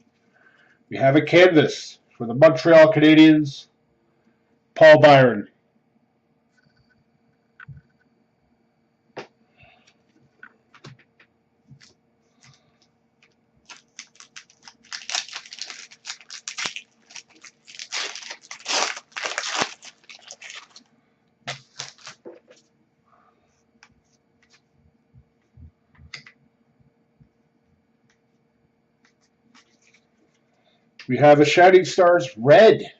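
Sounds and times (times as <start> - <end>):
foil wrapper tearing and crinkling: 13.6 - 20.9, 21.5 - 22.3.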